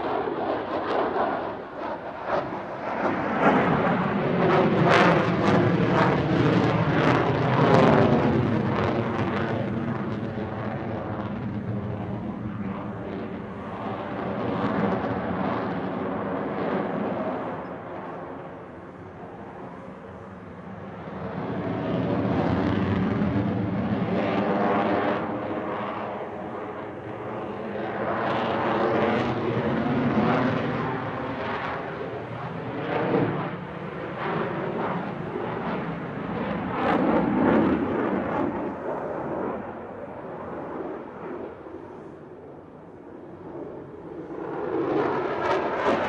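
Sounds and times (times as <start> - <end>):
fighter jet noise: 0.0 - 46.0.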